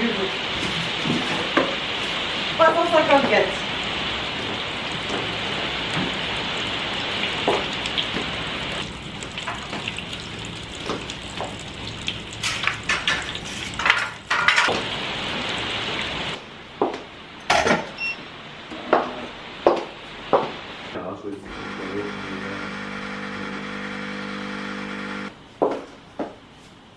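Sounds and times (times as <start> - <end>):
heavy rain hiss: 20.1 - 25.3.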